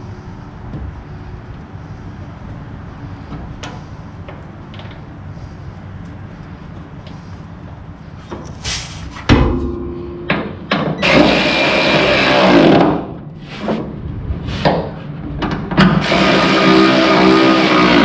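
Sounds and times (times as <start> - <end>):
metal clank: 8.7 - 11.0
knocks on metal: 9.3 - 11.0
power tool running: 11.0 - 13.0, 16.0 - 18.0.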